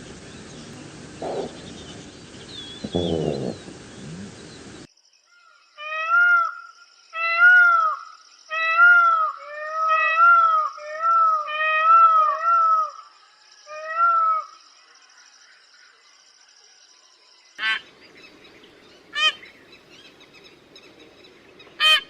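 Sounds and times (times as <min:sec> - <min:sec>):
peacock wailing calls: 0:00.0 - 0:04.9, 0:17.6 - 0:22.0.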